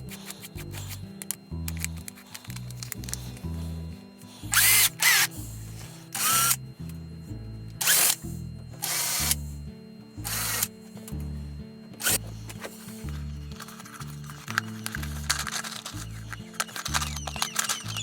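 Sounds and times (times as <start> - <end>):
background music with steady beat: 0.0 - 18.0
power drill whining: 4.5 - 5.4, 6.0 - 6.6, 7.8 - 8.2, 8.8 - 9.4, 10.2 - 10.7, 12.0 - 18.0.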